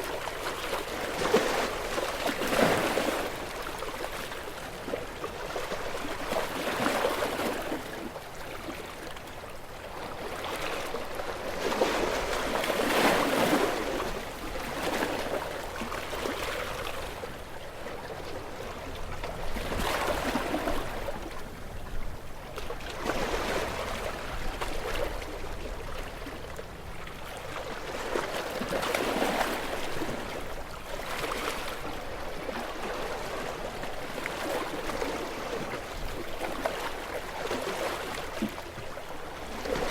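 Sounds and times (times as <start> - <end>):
waves breaking against rocks: 0.1 - 8.1, 10.2 - 17.2.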